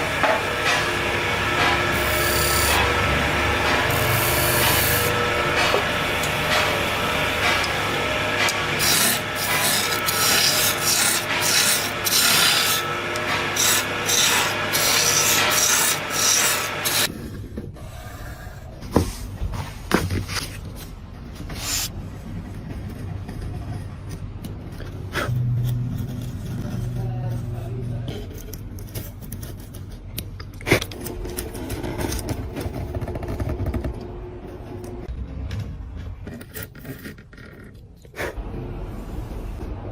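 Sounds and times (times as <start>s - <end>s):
hand tool scraping wood: 0.0s - 17.2s.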